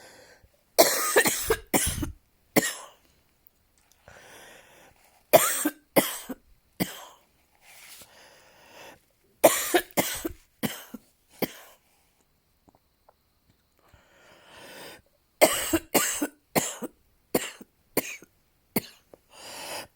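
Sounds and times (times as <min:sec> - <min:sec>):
person coughing harshly: 0:00.8 - 0:03.0, 0:05.3 - 0:07.2, 0:09.4 - 0:11.7, 0:15.4 - 0:19.0
breath drawn in: 0:07.5 - 0:09.0.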